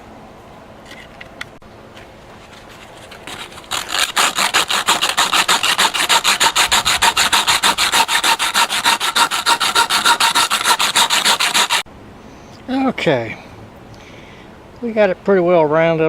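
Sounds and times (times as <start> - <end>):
sanding wood by hand: 2.5 - 11.9.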